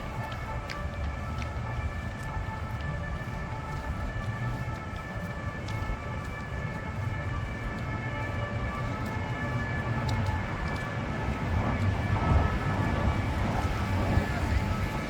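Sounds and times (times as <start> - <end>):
low traffic rumble: 5.2 - 15.0.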